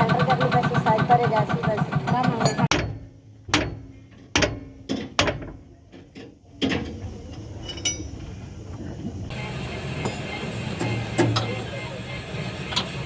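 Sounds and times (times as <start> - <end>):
sharp metal knocks and clanks: 0.0 - 7.0, 7.6 - 8.2.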